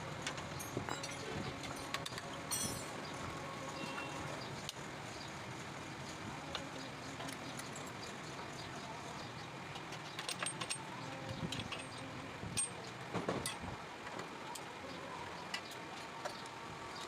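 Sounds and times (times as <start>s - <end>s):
metallic clinking and rattling: 2.5s - 3.0s, 9.9s - 10.8s.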